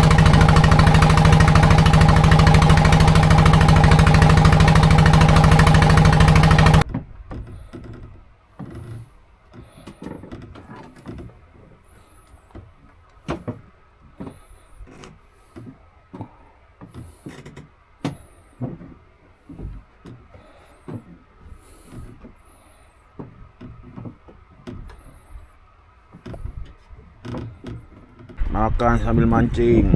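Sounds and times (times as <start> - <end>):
boat engine running: 0.0 - 6.9.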